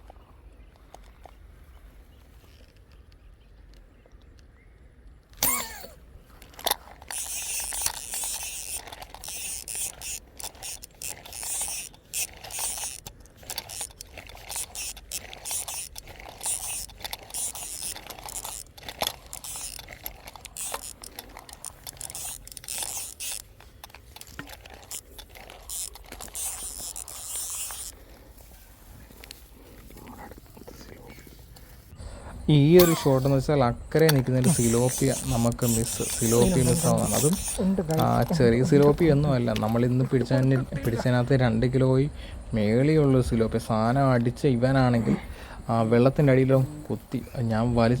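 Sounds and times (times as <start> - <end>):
reel ratchet clicking: 5.4 - 28.0, 34.0 - 40.5.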